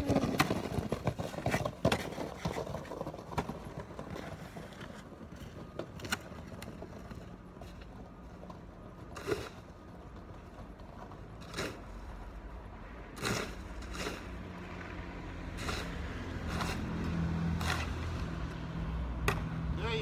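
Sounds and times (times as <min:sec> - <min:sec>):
low vehicle engine hum: 0:00.0 - 0:20.0
snow shovel scraping walkway: 0:11.4 - 0:12.2, 0:13.2 - 0:14.4, 0:15.5 - 0:18.3.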